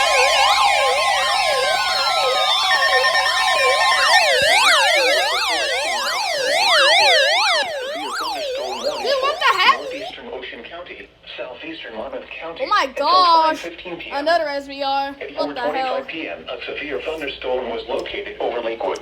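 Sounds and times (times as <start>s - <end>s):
electronic sirens wailing: 0.0s - 10.1s
falling whistles: 0.0s - 10.1s
steady alarm tones: 0.0s - 10.1s.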